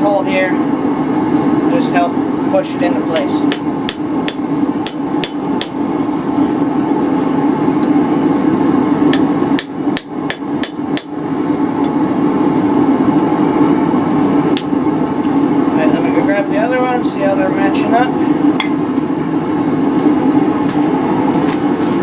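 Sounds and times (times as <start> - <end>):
steady drone: 0.0 - 22.0
hammer striking hot metal: 3.1 - 5.8, 9.1 - 11.2, 14.5 - 14.8.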